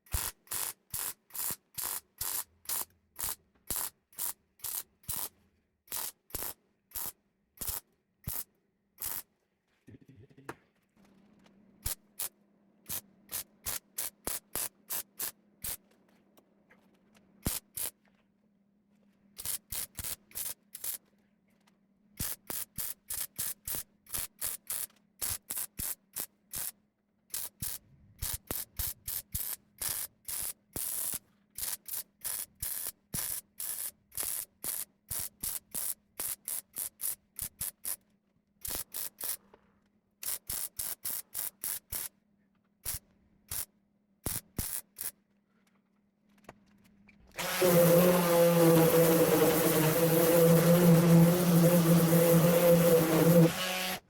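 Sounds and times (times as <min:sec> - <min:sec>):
welder crackling hisses: 0:47.4 - 0:54.0.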